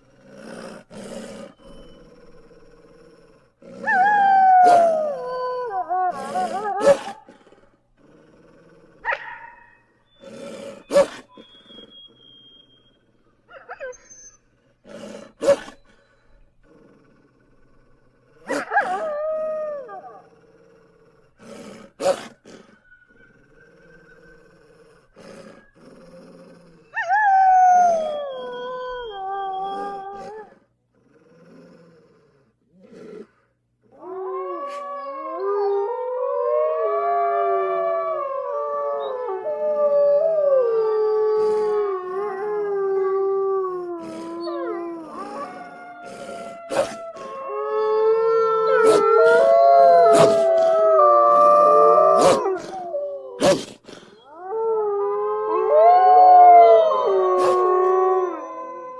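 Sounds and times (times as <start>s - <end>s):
wolves howling: 0.0s - 7.3s, 18.4s - 20.5s, 22.8s - 30.5s, 34.0s - 53.6s, 54.2s - 58.9s.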